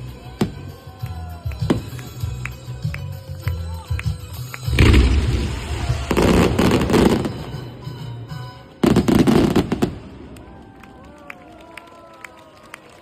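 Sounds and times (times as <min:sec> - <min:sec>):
fireworks booming and crackling: 0:04.6 - 0:10.5.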